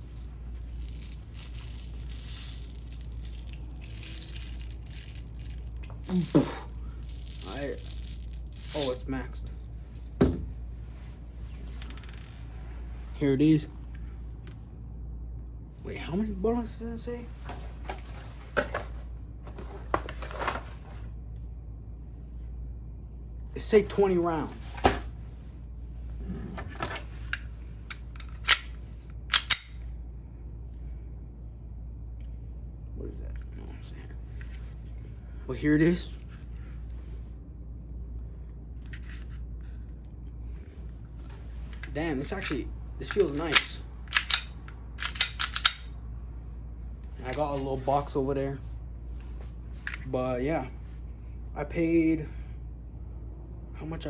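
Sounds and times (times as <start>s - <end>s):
metal bbs rattling and scraping: 0.0s - 12.5s, 26.6s - 29.8s, 41.2s - 46.0s
pistol mechanical clicks: 27.9s - 29.8s, 41.8s - 46.0s.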